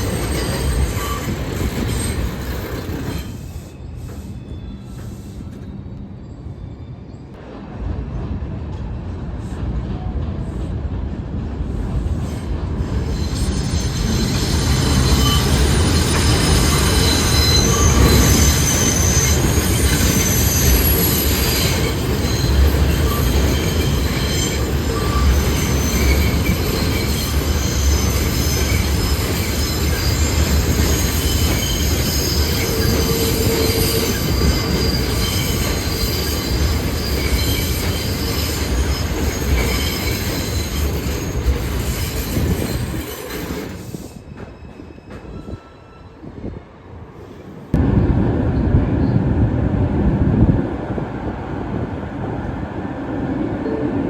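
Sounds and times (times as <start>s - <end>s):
train wheels squealing: 0.0s - 7.4s, 11.7s - 46.6s
heavy train rumble: 0.0s - 54.0s.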